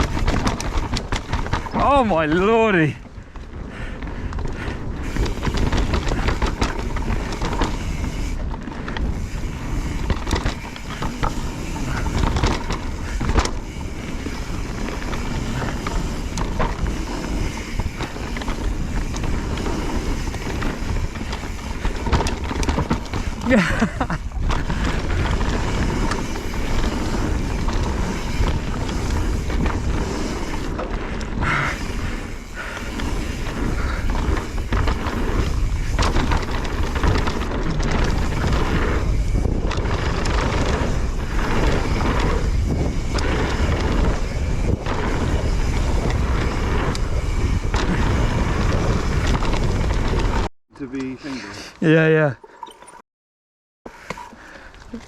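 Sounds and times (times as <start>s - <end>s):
wind on microphone: 0.0s - 2.3s, 2.9s - 50.5s
bike tyre rumble on dirt: 0.0s - 50.5s.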